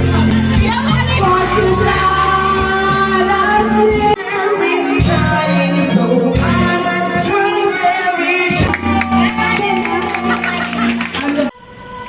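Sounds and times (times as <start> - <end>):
pop song with vocals: 0.0 - 12.0.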